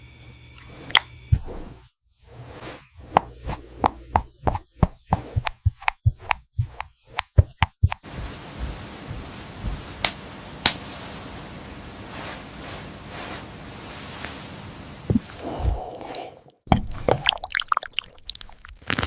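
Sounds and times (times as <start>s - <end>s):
single clicks: 0.5s - 1.2s
sharp taps and knocks: 3.1s - 8.1s
steady hiss: 8.0s - 15.7s.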